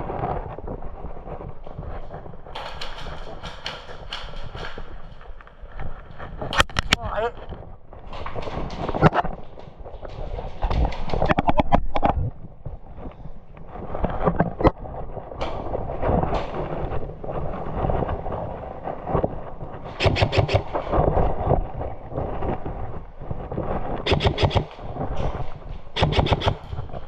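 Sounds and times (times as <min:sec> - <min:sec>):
airsoft guns firing: 0:24.1 - 0:24.9, 0:26.0 - 0:27.0.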